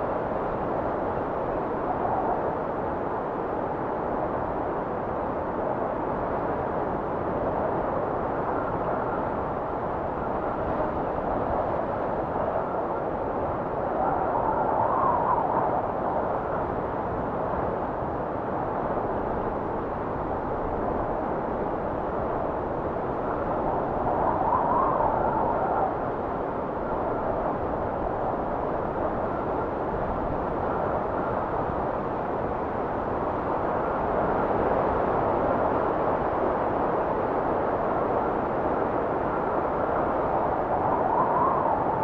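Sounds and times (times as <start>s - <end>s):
wind blowing in gusts: 0.0s - 42.0s.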